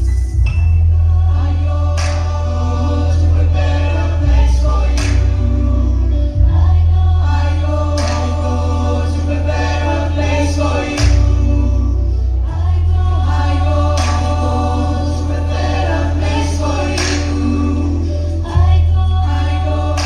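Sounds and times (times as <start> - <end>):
backing track with deep bass: 0.0 - 20.0
choir singing in harmony: 0.0 - 20.0.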